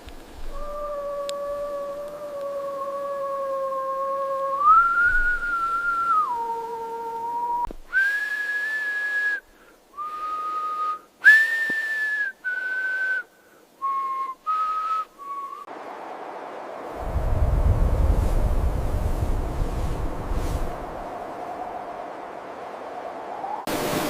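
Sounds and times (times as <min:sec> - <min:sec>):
wind hiss: 0:00.0 - 0:24.0
whistled tune: 0:04.4 - 0:06.6, 0:07.3 - 0:09.4, 0:10.0 - 0:15.7.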